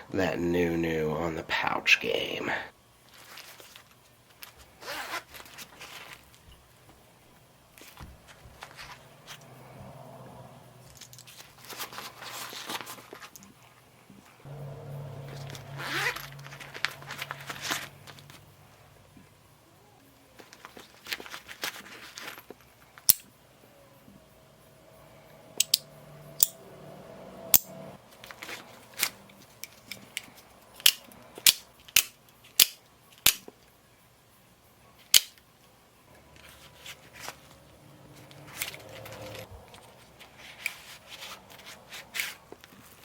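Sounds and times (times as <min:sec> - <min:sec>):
sharp clicks and snaps: 0:25.6 - 0:25.8, 0:35.1 - 0:35.4.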